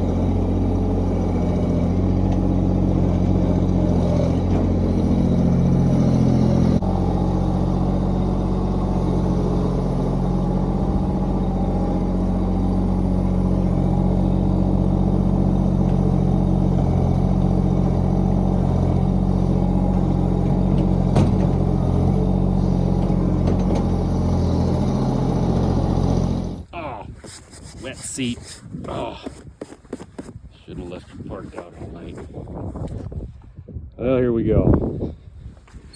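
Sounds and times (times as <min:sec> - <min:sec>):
tractor engine running under load: 0:00.0 - 0:26.7.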